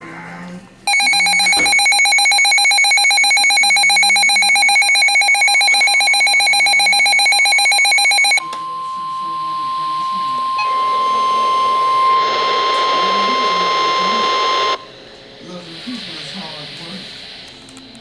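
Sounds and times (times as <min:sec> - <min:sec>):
electronic alert with fast trill: 0:00.9 - 0:14.9
steady high beep: 0:00.9 - 0:14.9.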